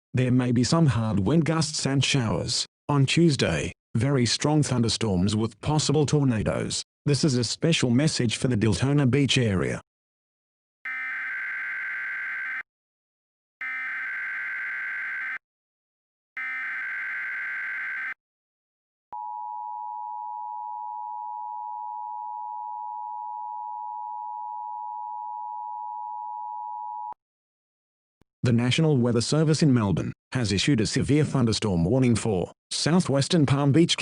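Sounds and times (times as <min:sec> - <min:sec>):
shrill digital data bursts: 0:13.6 - 0:15.4, 0:16.4 - 0:18.2
steady warning alarm beep: 0:13.6 - 0:15.4, 0:16.4 - 0:18.2.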